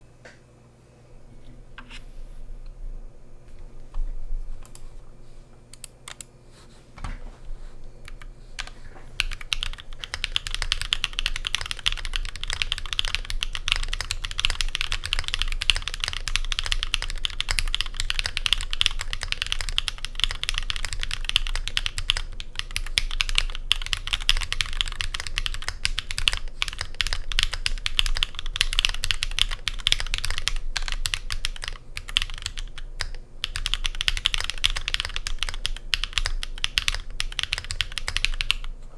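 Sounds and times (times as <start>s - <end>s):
mechanical keyboard typing: 8.1s - 38.7s.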